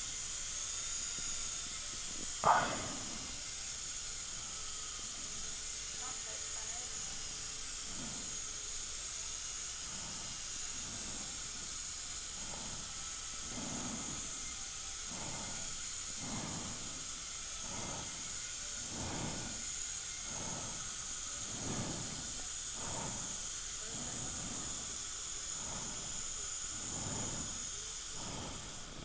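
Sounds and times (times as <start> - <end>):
dental equipment whine: 0.0 - 29.0
soft low pulses: 2.4 - 3.5, 9.8 - 29.0.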